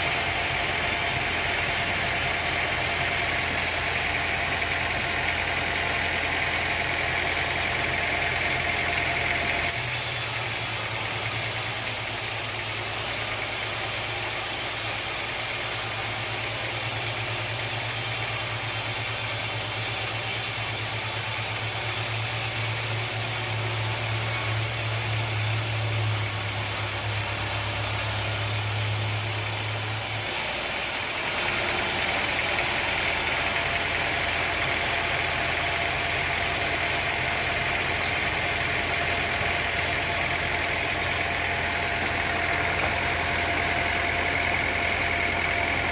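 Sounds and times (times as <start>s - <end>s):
sawmill engine droning: 0.0s - 45.9s.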